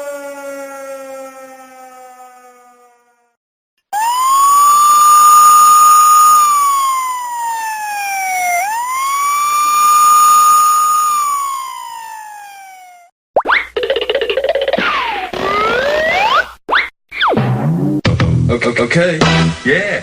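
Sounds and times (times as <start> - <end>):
siren wailing: 0.0 - 13.1, 15.4 - 16.4.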